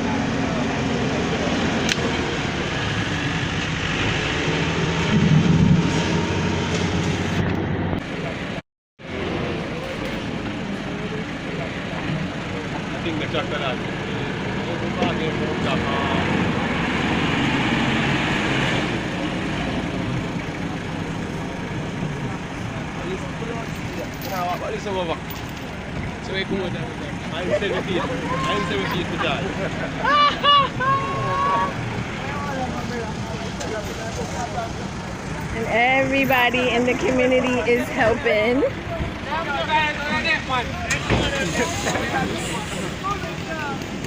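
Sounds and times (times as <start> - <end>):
vehicle engine and road noise: 0.0 - 44.0
faint voices: 19.1 - 44.0.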